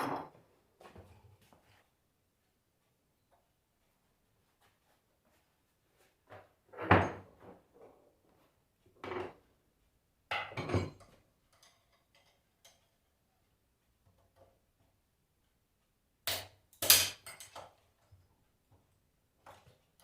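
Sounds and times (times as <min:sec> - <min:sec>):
metal tools clattering on workbench: 0:10.3 - 0:13.1, 0:16.8 - 0:18.2.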